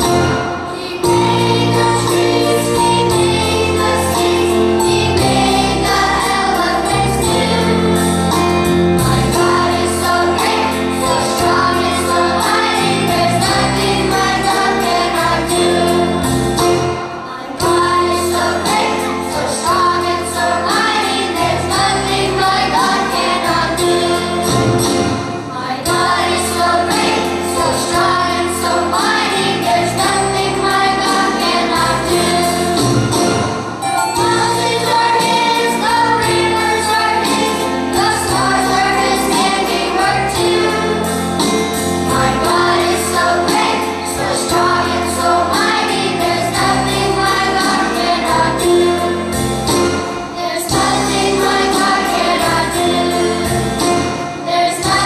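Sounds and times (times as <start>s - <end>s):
choir singing: 0.0s - 55.0s
instrumental accompaniment: 0.0s - 55.0s.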